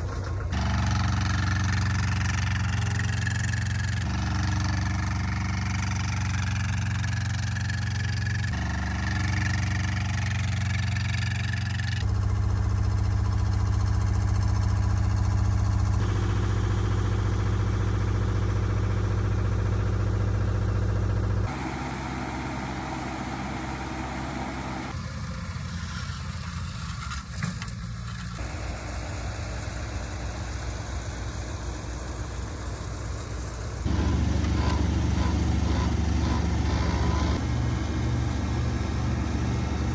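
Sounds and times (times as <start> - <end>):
paving machinery engines humming: 0.0 - 39.9.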